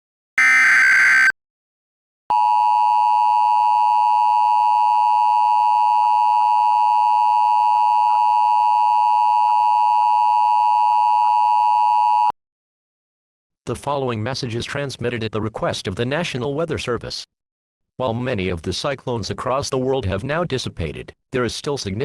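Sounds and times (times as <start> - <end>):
shrill digital data burst: 0.4 - 1.3
two-tone attention signal: 0.4 - 1.3.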